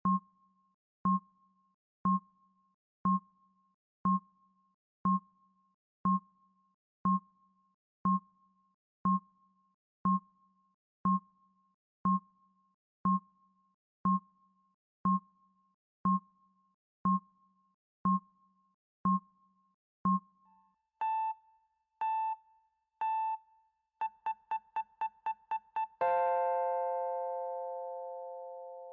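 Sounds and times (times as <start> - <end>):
electronic timer ticking: 24.0 - 26.0.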